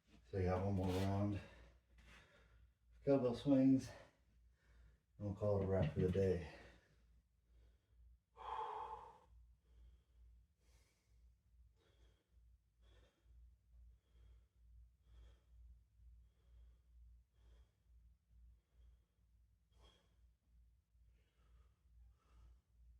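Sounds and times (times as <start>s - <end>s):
man breathing heavily: 6.5s - 18.0s, 21.1s - 22.7s.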